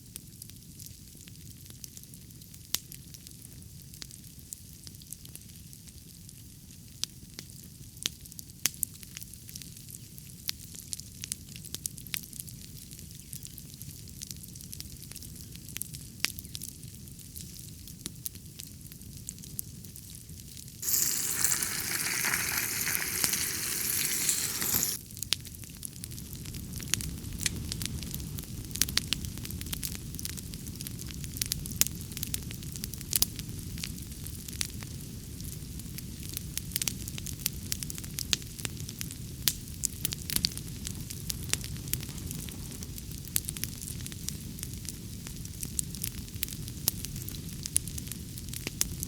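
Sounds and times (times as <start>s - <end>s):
food sizzling in a hot pan: 20.8s - 25.0s
wood fire crackling and popping: 20.8s - 25.0s.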